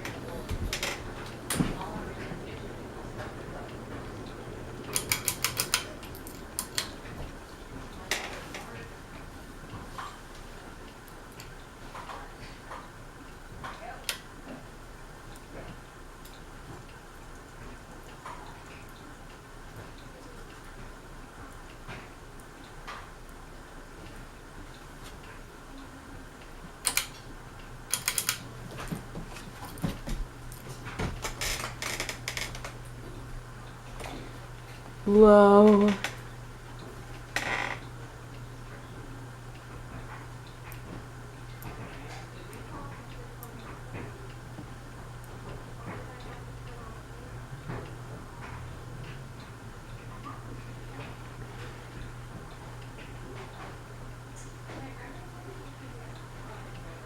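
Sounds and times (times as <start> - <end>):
ceiling fan switch clicks: 0.0 - 7.1, 26.8 - 27.3
fan control clicks and rattling: 0.0 - 14.6, 26.4 - 57.0
fan motor hum: 0.0 - 57.0.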